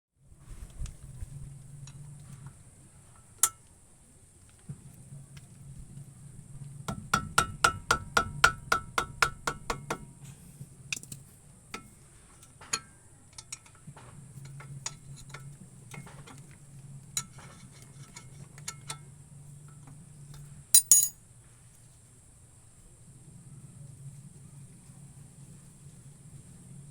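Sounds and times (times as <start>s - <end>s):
brake pin rattling metallic clinks: 20.8s - 21.1s.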